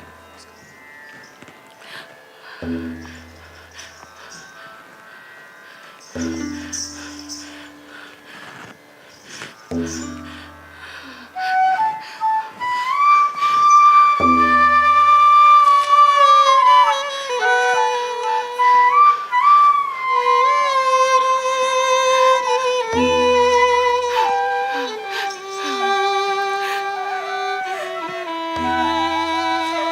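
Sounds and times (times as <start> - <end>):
deep drum strokes: 2.6 - 3.8
flute melody: 10.0 - 29.9.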